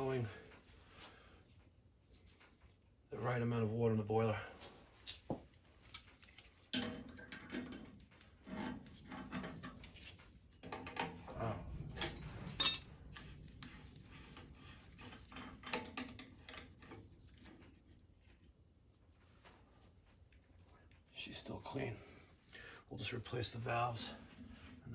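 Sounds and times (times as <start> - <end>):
metal tools clinking and knocking: 11.9 - 13.3.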